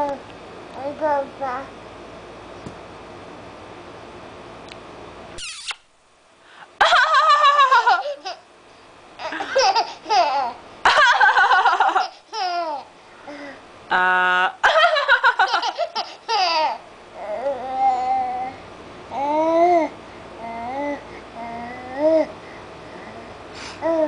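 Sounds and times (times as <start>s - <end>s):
baby laughing: 6.8s - 8.4s, 9.2s - 12.9s, 14.7s - 16.8s.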